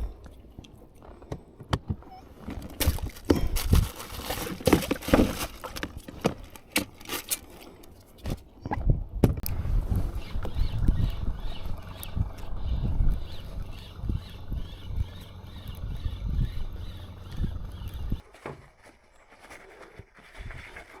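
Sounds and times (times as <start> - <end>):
fish flapping on deck: 2.6 - 7.5.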